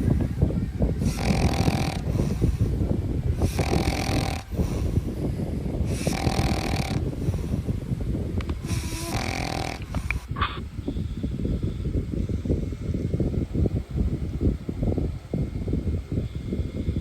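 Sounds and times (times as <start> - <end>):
dog snoring: 1.0 - 2.7, 3.4 - 5.0, 5.8 - 7.5, 8.6 - 10.6
dog breath sound: 1.0 - 7.8, 8.5 - 10.6.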